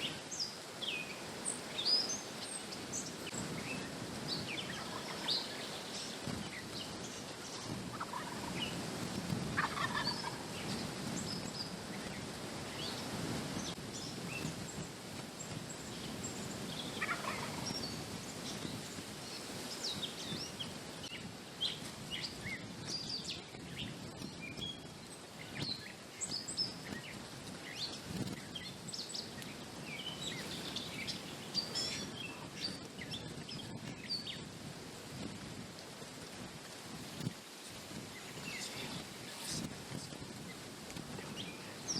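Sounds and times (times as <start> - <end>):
small birds chirping: 0.0 - 8.8, 9.6 - 34.5, 38.0 - 41.9
wind hiss: 0.0 - 41.9
turkey gobbling: 4.6 - 5.7, 7.4 - 8.8, 9.6 - 10.5, 16.9 - 17.8.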